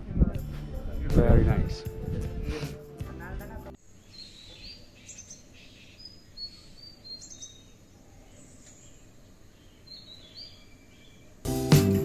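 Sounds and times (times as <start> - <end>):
small birds chirping: 3.8 - 11.4.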